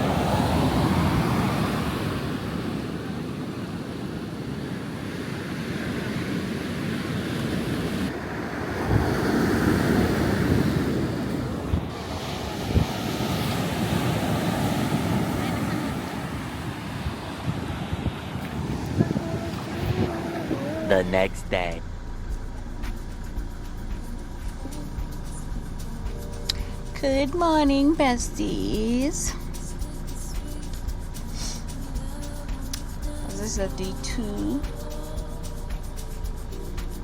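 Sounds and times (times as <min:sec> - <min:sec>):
ocean surf: 0:00.0 - 0:21.8
wind buffeting microphone: 0:00.0 - 0:24.8.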